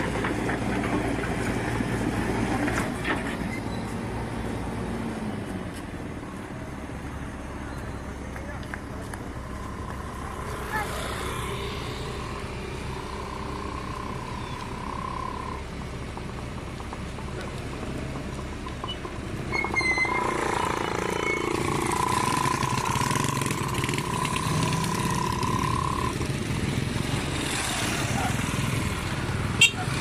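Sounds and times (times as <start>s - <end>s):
clatter with squeals: 0.0s - 4.3s, 12.9s - 28.9s
excavator engine running: 0.0s - 30.0s.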